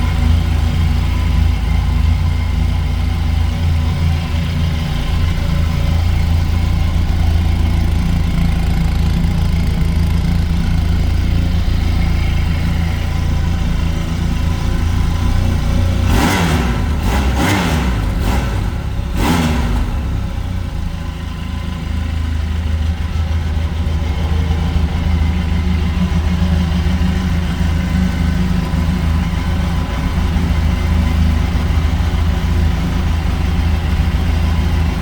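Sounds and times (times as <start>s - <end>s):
motorcycle engine revving and idling: 0.0s - 35.0s.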